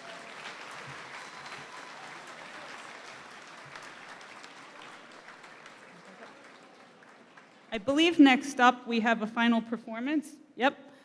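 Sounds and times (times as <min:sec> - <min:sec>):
audience applauding: 0:00.0 - 0:07.7.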